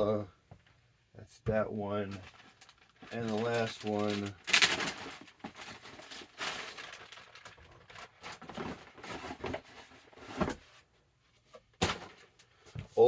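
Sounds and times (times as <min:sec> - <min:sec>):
cardboard and plastic rustling: 0:01.9 - 0:13.0.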